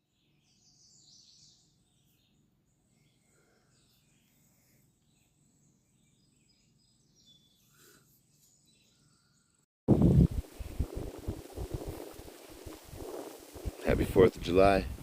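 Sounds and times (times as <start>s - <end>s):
songbird chirps: 0.0s - 9.7s
sudden loud rush of noise: 9.9s - 15.0s.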